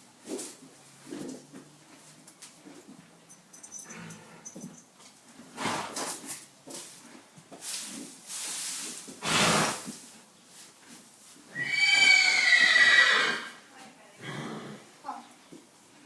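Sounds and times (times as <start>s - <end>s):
horse snorting: 3.8s - 4.6s, 5.5s - 6.2s, 9.2s - 10.0s, 14.2s - 14.9s
horse whinnying: 11.5s - 13.6s.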